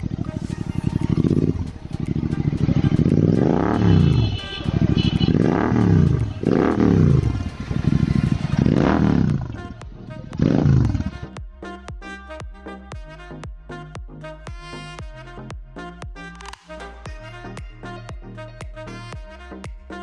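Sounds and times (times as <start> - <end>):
motorcycle engine idling: 0.0 - 11.2
motorcycle throttle revving: 0.0 - 11.4.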